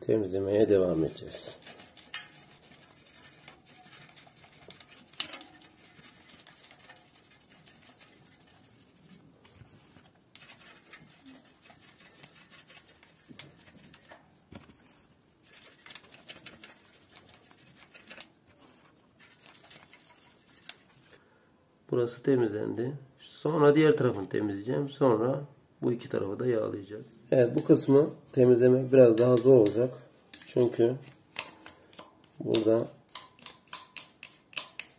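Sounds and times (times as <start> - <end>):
toothbrush bristles scratching: 0.9 - 21.2, 29.0 - 34.9.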